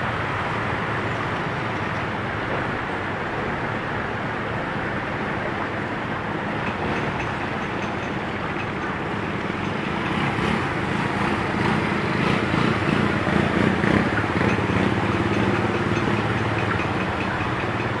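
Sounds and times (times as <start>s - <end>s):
street noise: 0.0s - 18.0s
motor engine running: 6.7s - 18.0s.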